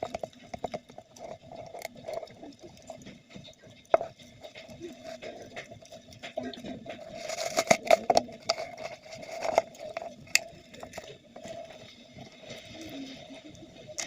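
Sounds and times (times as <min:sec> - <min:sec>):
faint steady hum: 0:00.0 - 0:14.0
packaging clicks and scraping: 0:04.0 - 0:11.8.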